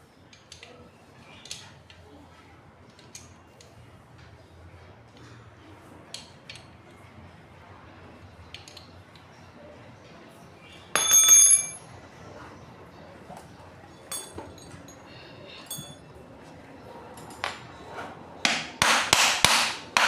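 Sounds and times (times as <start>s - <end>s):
loud ringing metallic clink: 11.0s - 11.9s, 14.1s - 14.7s, 15.7s - 16.0s.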